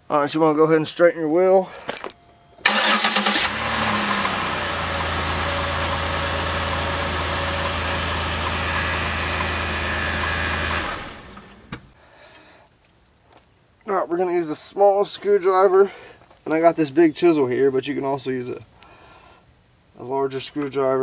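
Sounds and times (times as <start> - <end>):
car engine idling: 2.6 - 12.0.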